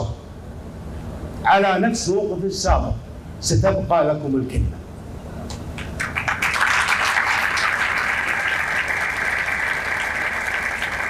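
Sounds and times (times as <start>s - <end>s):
crowd applauding: 5.7s - 11.0s.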